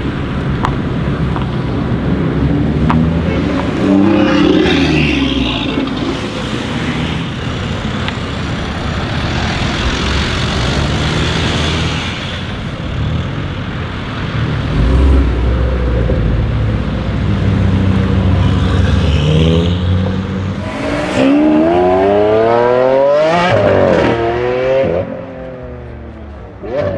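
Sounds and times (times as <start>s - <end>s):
car engine accelerating hard: 14.5s - 25.3s.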